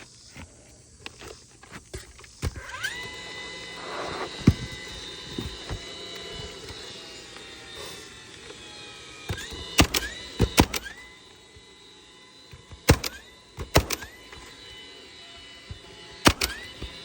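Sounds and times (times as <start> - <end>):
roofing nailer firing: 3.8 - 6.8, 9.2 - 11.3, 12.5 - 14.7, 15.4 - 17.0.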